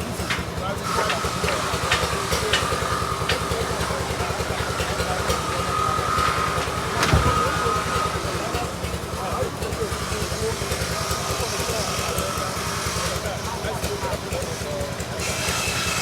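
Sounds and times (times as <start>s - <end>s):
engine running steadily: 0.0s - 16.0s
loud knock: 7.0s - 7.7s.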